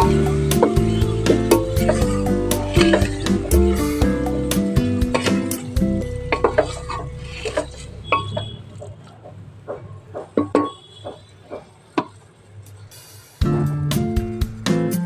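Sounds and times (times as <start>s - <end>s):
metal utensil clinking on cookware: 0.0s - 3.6s, 4.8s - 8.4s
low steady hum: 0.0s - 9.2s.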